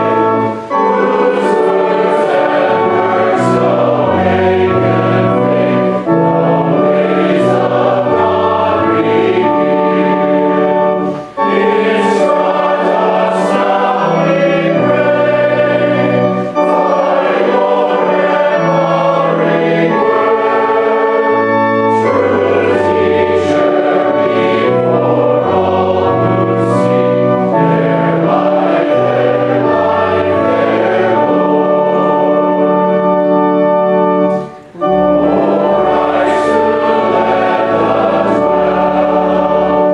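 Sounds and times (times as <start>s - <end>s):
choir singing a hymn: 0.0s - 39.9s
organ accompaniment: 0.0s - 39.9s.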